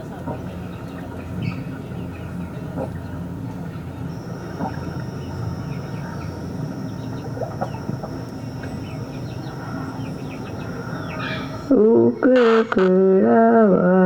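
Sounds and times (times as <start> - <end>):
low background hum: 0.0 - 14.0
bird chirps: 4.1 - 11.8
high-pitched tone: 4.1 - 12.9.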